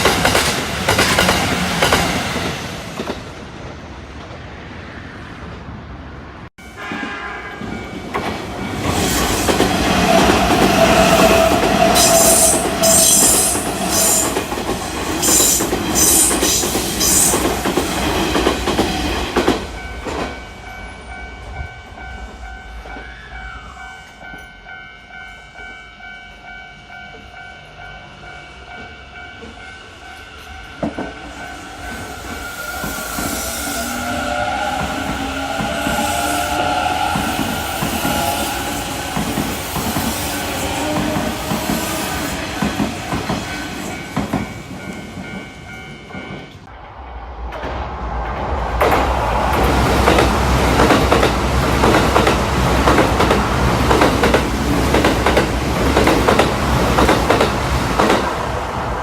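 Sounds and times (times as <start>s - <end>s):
electric train passing: 0.0s - 59.0s
steady tones: 42.1s - 52.9s.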